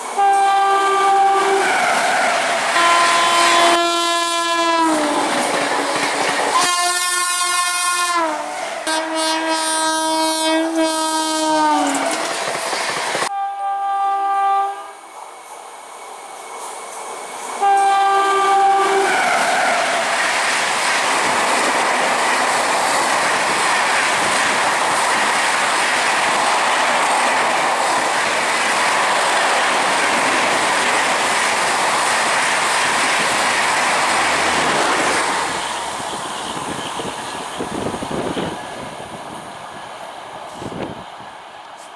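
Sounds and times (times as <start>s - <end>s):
train rushing by: 0.0s - 13.4s, 14.2s - 41.9s
train horn blasts: 0.2s - 2.0s, 2.7s - 5.5s, 6.5s - 12.2s, 13.3s - 15.1s, 17.6s - 19.4s.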